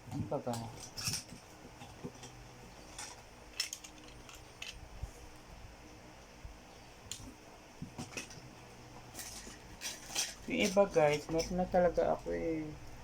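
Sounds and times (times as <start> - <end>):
plastic toys clicking and rustling: 0.1 - 4.8, 9.1 - 12.2.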